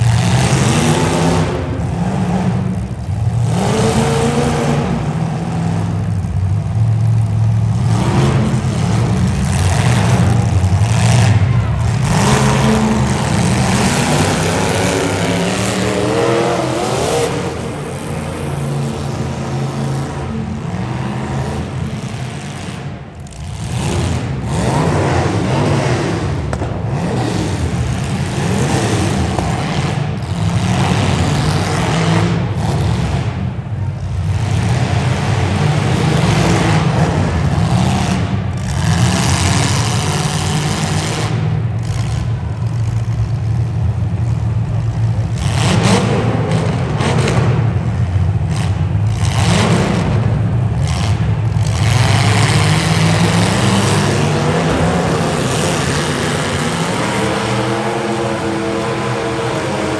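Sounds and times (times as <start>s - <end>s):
car engines revving: 0.0s - 59.9s.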